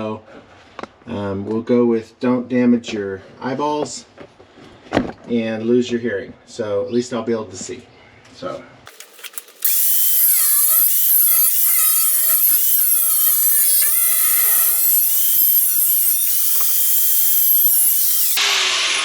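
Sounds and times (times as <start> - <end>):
angle grinder cutting steel: 8.9 - 19.0.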